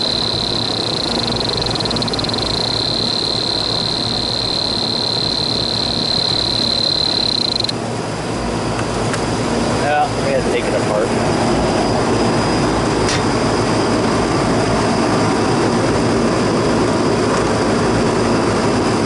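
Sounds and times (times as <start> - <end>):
high-pitched whine: 0.0 - 7.9, 9.4 - 16.8
air conditioning units rushing: 7.6 - 19.0.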